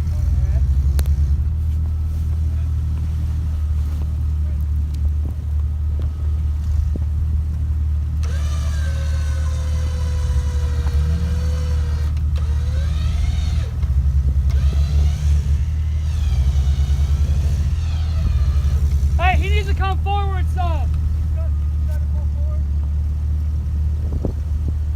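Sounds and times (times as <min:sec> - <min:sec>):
vehicle engine running: 0:00.0 - 0:24.9
electric winch motor whine: 0:05.5 - 0:22.0.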